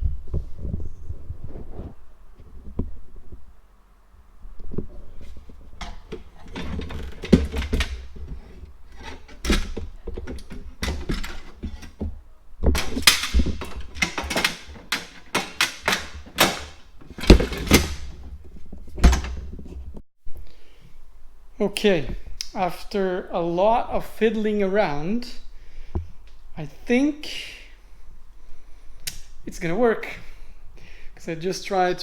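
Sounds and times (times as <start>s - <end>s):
hardware knocks and clicks: 4.7s - 20.0s.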